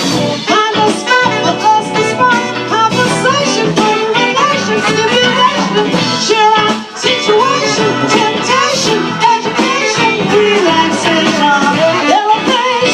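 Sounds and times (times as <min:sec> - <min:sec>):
blues band with guitar: 0:00.0 - 0:12.9.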